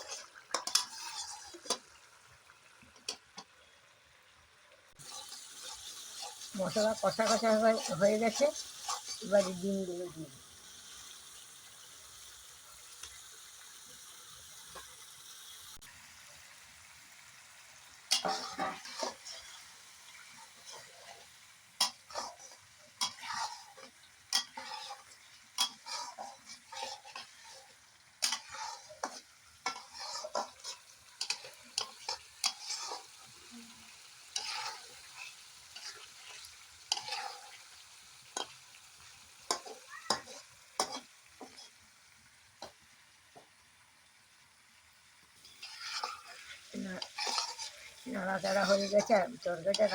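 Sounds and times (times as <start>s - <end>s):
spatula scraping a pan: 0.0s - 2.1s, 5.0s - 10.2s, 18.1s - 41.9s, 45.4s - 49.9s
low frying sizzle: 0.0s - 49.9s.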